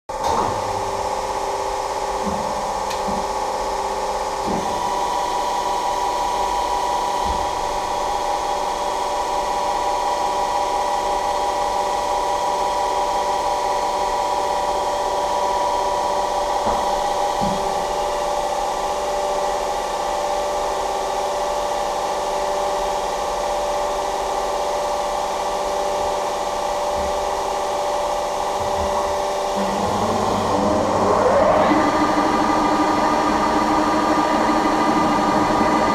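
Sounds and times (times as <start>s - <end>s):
machine mechanical whine: 25.8s - 35.9s.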